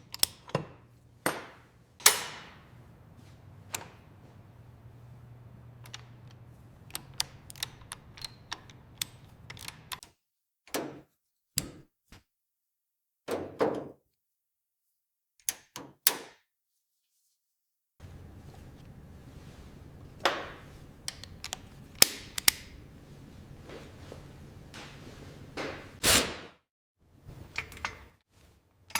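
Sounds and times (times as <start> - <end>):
sharp clicks and taps of metal: 21.1 - 22.7.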